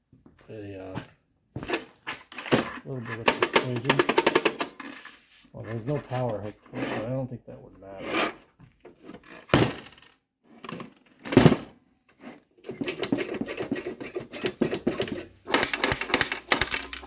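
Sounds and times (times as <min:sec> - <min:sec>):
coins clicking and rattling: 0:14.3 - 0:17.0.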